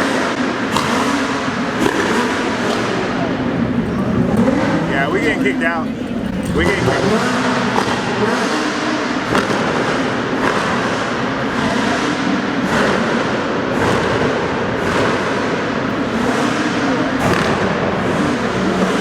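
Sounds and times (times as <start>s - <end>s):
engines running: 0.0s - 19.0s
exhaust pops and bangs: 0.6s - 5.4s.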